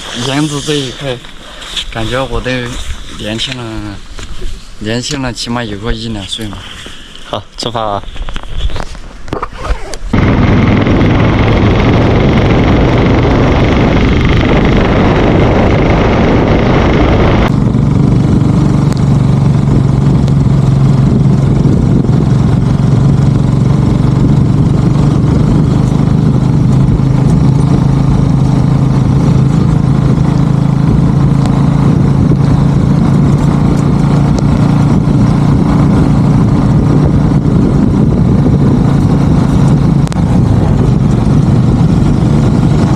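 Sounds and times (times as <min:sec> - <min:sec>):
wind and road noise: 0:00.0 - 0:42.9
motorcycle engine running: 0:10.1 - 0:42.9.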